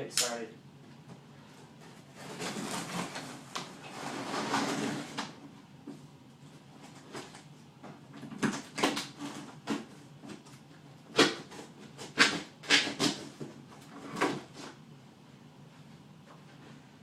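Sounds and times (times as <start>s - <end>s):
cardboard box scraping and knocking: 2.0s - 5.4s.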